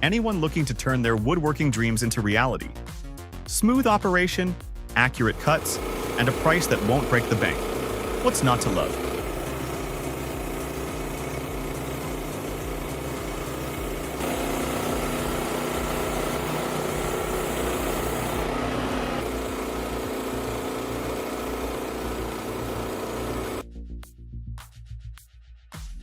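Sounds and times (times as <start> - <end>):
small petrol engine running: 5.3 - 23.6.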